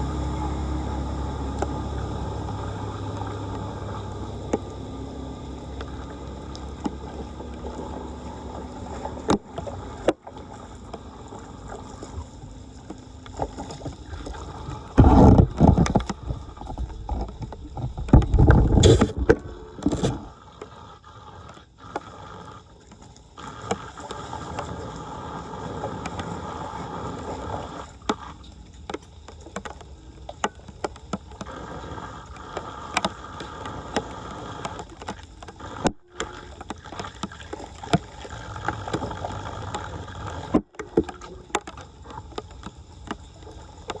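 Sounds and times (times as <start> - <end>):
water splashing and gurgling in drain: 0.0 - 44.0
small clicks and knocks: 28.0 - 31.5.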